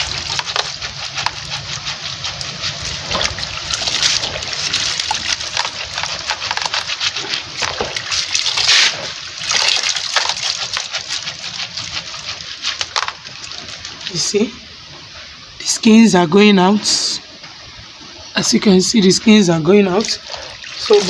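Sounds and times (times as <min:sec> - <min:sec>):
hands sloshing beans in water: 0:00.0 - 0:14.3, 0:18.8 - 0:21.0.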